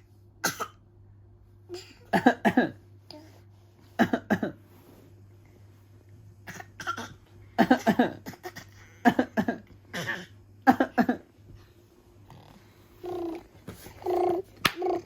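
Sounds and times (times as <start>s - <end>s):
baby coughing: 0.4s - 0.8s, 1.7s - 2.8s, 4.0s - 4.6s, 6.4s - 11.3s
man coughing: 1.8s - 2.8s, 4.0s - 4.6s, 6.5s - 11.3s.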